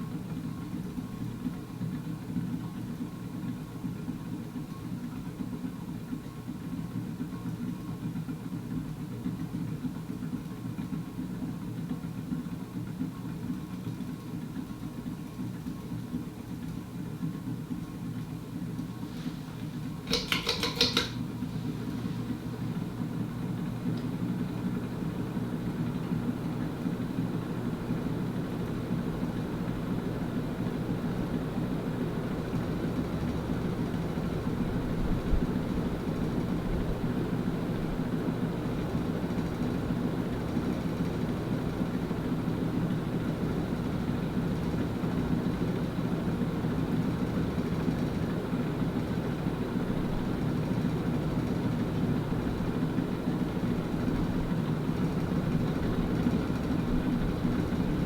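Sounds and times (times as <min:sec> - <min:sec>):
ceiling fan motor hum: 0:00.0 - 0:58.0
fan bearing rumble: 0:32.2 - 0:58.0.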